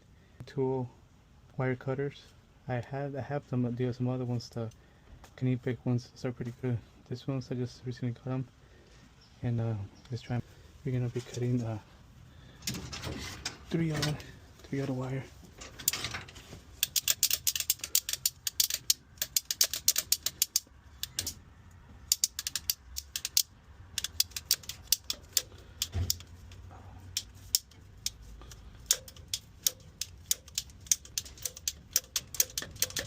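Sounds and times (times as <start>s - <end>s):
ratcheting cable cutter clicks: 16.8s - 21.4s, 22.1s - 33.0s.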